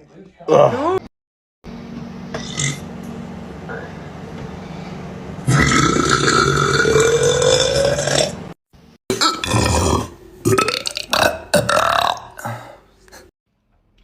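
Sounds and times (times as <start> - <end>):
man burping: 5.5 - 8.4, 9.1 - 12.7.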